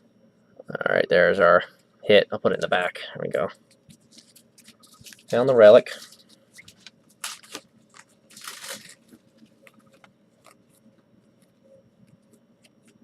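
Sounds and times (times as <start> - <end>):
trading cards rustling: 3.7 - 13.0.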